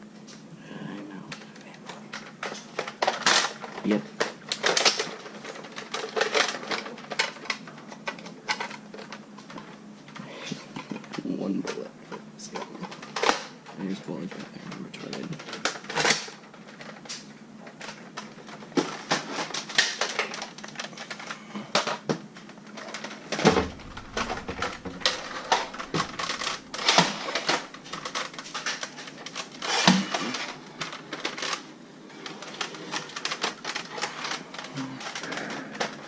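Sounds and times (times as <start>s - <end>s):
loud thumps: 23.4s - 28.3s.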